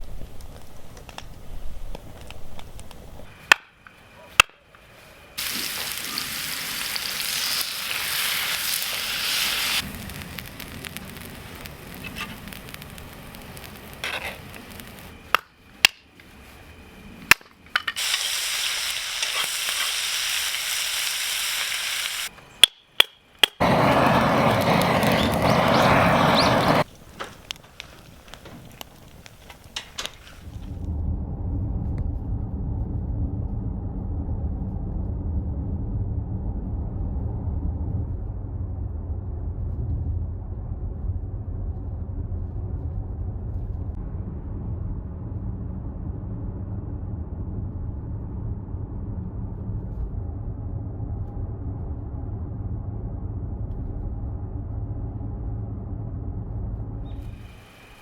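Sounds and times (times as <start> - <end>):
food sizzling in a pan: 5.4 - 14.9, 18.0 - 22.3.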